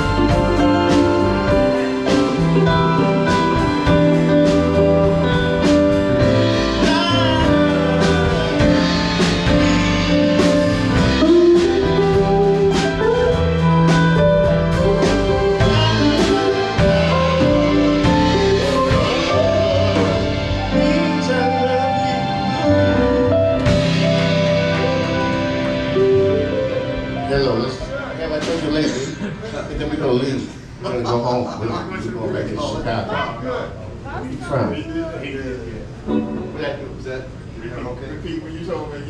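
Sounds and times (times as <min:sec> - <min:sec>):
live rock band playing: 0:00.0 - 0:30.4, 0:36.1 - 0:37.4.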